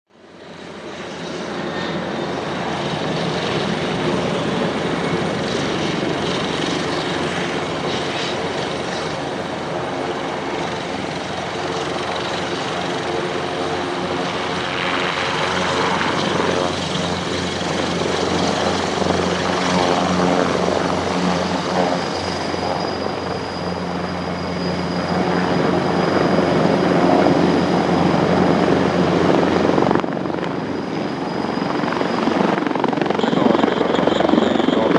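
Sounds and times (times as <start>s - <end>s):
helicopter engines and rotor: 0.1s - 34.9s
high turbine whine: 0.1s - 34.9s.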